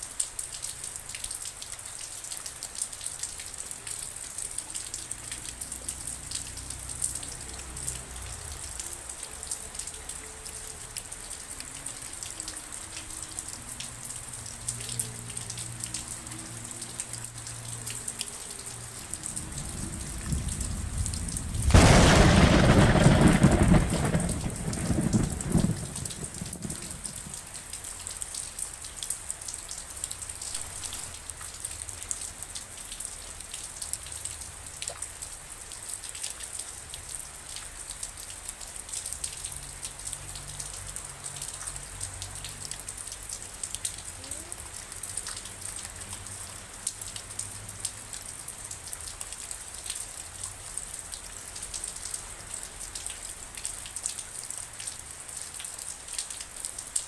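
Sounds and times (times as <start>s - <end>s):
rain falling: 0.0s - 57.0s
thunder rolling: 18.9s - 27.6s.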